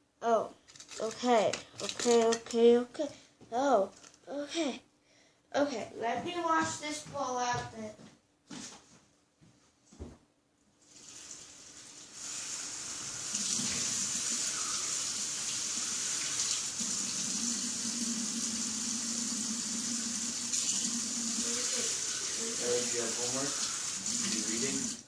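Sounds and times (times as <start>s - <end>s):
bowl being rinsed: 10.8s - 25.0s.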